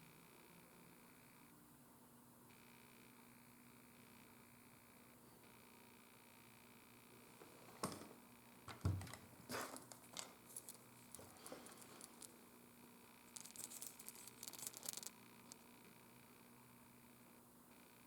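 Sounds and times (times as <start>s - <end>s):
scratchy rustling: 9.4s - 12.4s, 13.3s - 15.6s.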